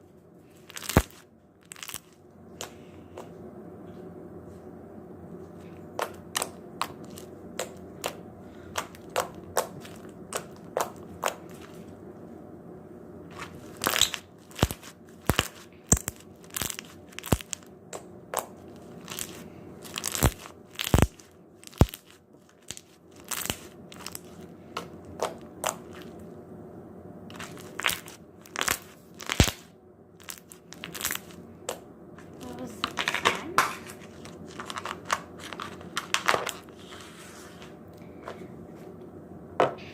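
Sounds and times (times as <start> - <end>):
slime clicking and popping: 13.8 - 18.5, 19.9 - 24.2, 27.4 - 31.8.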